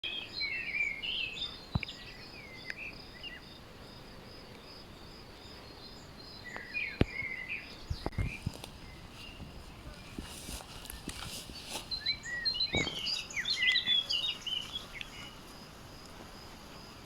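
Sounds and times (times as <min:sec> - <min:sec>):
background hiss: 0:00.0 - 0:17.0
small birds chirping: 0:00.0 - 0:17.0
insect trill: 0:00.3 - 0:09.7.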